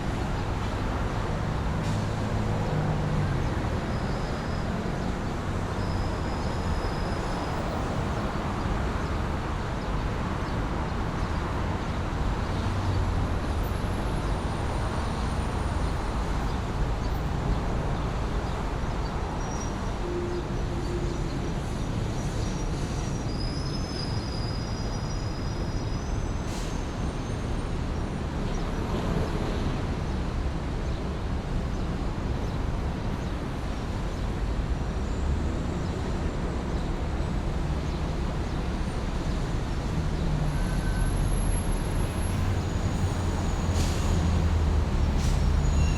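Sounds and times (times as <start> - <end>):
traffic rumble: 0.0 - 45.9
faint high squeals: 45.6 - 45.9.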